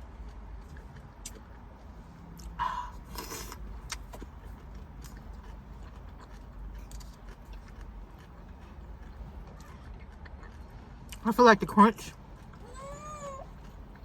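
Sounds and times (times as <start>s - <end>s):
faint chewing clicks: 0.2s - 9.4s
coleslaw crunching: 0.6s - 9.4s.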